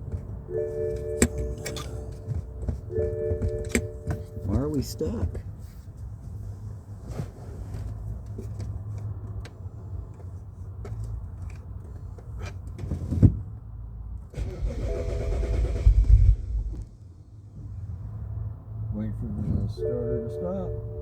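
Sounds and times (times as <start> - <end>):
starter cranking car engine: 14.3 - 16.8.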